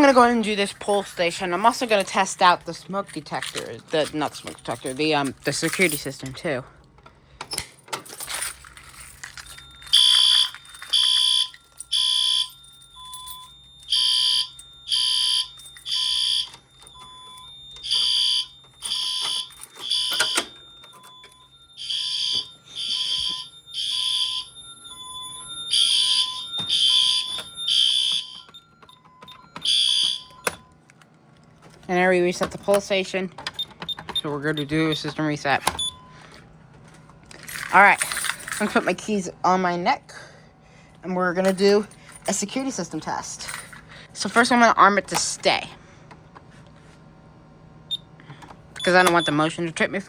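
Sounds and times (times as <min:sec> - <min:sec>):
fire alarm blasts: 0:09.6 - 0:30.7, 0:32.4 - 0:36.3, 0:48.8 - 0:49.8.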